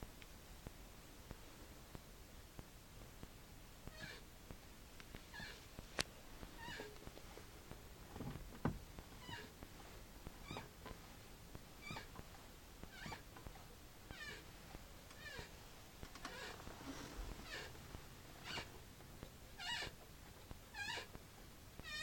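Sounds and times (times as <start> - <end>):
clutch pedal squeaking: 16.1 - 16.6.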